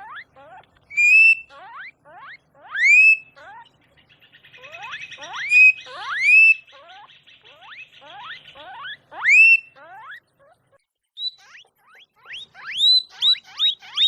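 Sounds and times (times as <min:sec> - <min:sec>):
animal whistled calls: 0:00.9 - 0:01.5, 0:02.8 - 0:03.4, 0:04.6 - 0:06.8, 0:07.7 - 0:09.8.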